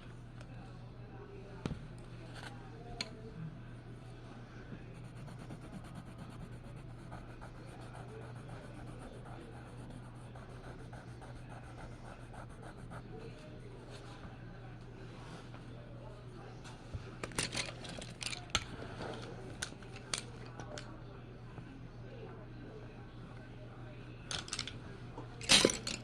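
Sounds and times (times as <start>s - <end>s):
steady low hum: 0.0s - 26.0s
faint scratching on a surface: 4.7s - 14.4s.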